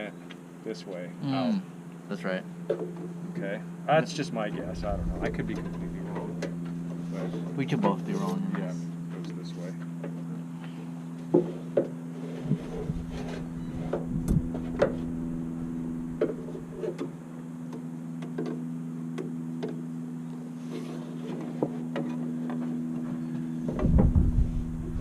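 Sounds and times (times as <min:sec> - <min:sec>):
steady low hum: 0:00.0 - 0:25.0
wind rumble on microphone: 0:04.7 - 0:06.1, 0:12.5 - 0:15.0, 0:23.7 - 0:25.0.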